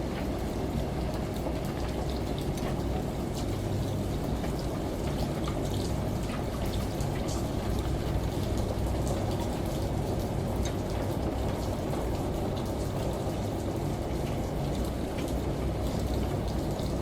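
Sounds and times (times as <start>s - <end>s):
shower and rain pattering: 0.0s - 17.0s
washing machine hum: 0.0s - 17.0s.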